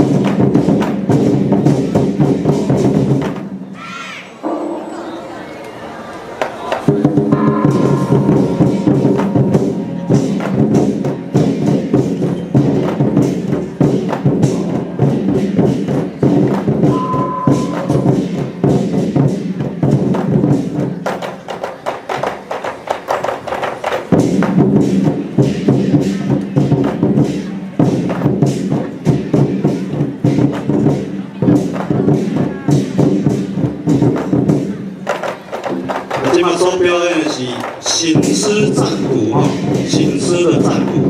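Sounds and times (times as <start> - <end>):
drum gongs and cymbals: 0.0 - 41.0
held pitched tones: 4.3 - 11.3, 16.9 - 18.6.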